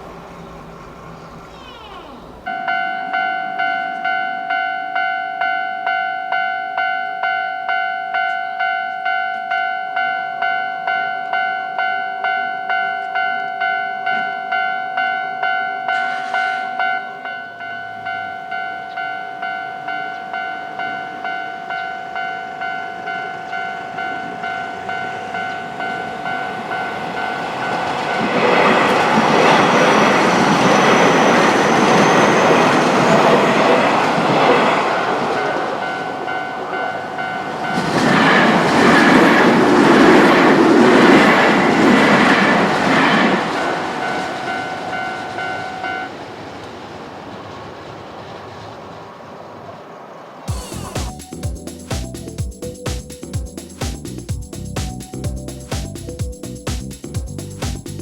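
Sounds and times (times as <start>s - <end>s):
electric train passing: 0.0s - 58.0s
level-crossing bell ringing: 2.4s - 38.5s, 43.0s - 46.2s.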